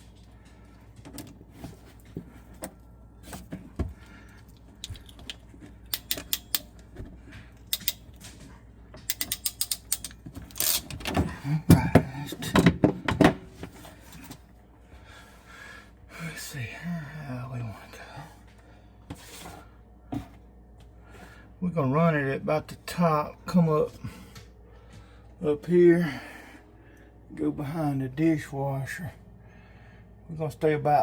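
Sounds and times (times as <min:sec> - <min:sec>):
metal hand tools clicking: 0:09.1 - 0:10.8.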